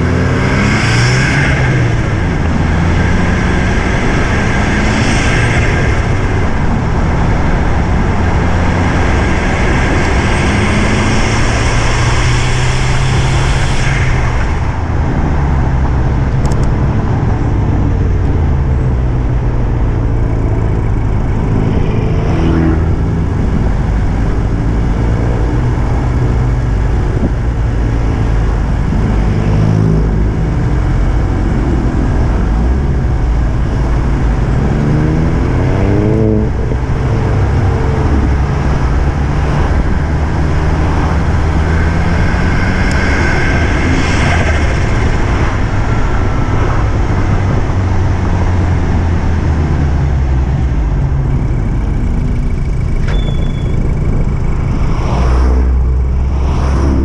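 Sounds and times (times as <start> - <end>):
car engine revving: 0.0 - 57.0
car engines rumbling: 0.0 - 57.0.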